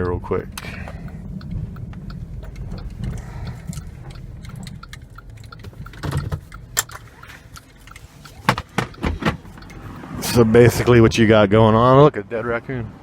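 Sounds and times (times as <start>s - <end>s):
light clicks and ticks: 0.0s - 9.8s
car rolling with low rumble: 0.0s - 13.0s.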